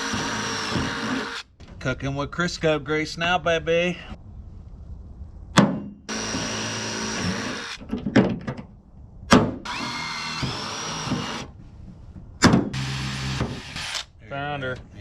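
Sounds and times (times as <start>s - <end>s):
power drill whining: 0.0s - 1.5s, 6.1s - 7.8s, 9.6s - 11.6s, 12.7s - 14.1s.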